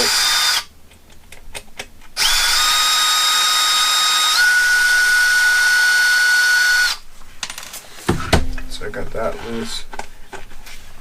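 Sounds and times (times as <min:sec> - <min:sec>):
cordless drill whining: 0:00.0 - 0:00.7, 0:02.2 - 0:07.0.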